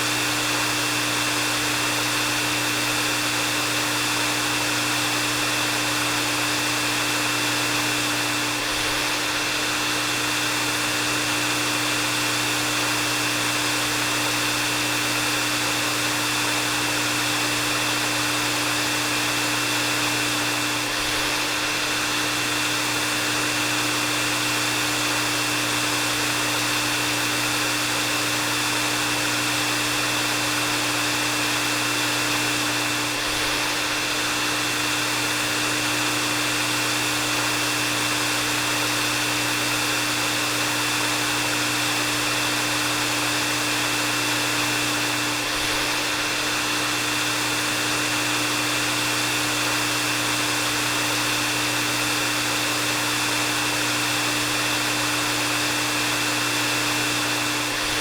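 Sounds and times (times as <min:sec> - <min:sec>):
hair dryer running: 0:00.0 - 0:58.0.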